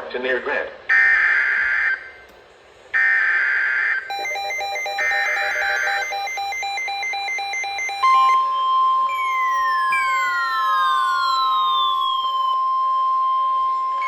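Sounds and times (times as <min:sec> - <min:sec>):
rapid alternating beeping alarm: 0:00.9 - 0:02.2, 0:03.0 - 0:14.0
steady warning tone: 0:03.0 - 0:14.0
screeching digital data bursts: 0:04.1 - 0:08.3, 0:09.1 - 0:12.6.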